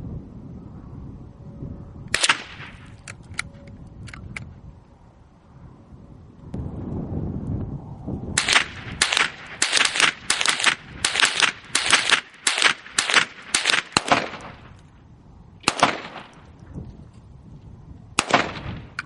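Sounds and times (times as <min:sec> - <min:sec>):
gunshots: 0:02.2 - 0:02.9, 0:08.4 - 0:14.7, 0:15.6 - 0:16.4, 0:18.2 - 0:19.0.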